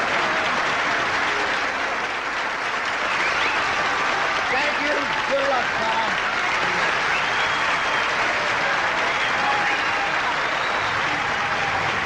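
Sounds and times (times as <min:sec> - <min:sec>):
audience applauding: 0:00.0 - 0:12.0.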